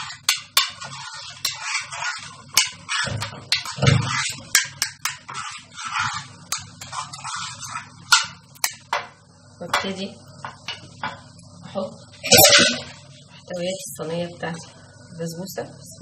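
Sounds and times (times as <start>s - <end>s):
scraping of metal tray: 0.0s - 8.4s, 12.2s - 13.0s.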